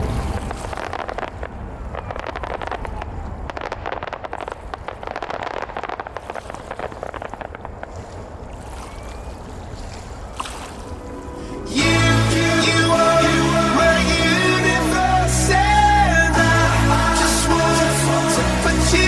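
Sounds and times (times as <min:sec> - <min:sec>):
fireworks crackling pops: 0:00.0 - 0:09.3, 0:11.8 - 0:19.0
low rumble: 0:10.2 - 0:19.0.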